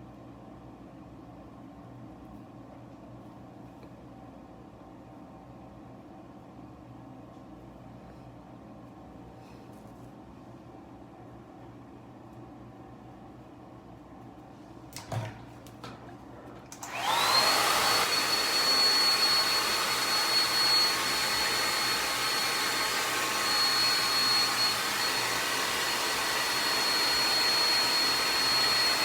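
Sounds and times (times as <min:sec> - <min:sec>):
blow dryer motor whine: 0:16.7 - 0:29.0.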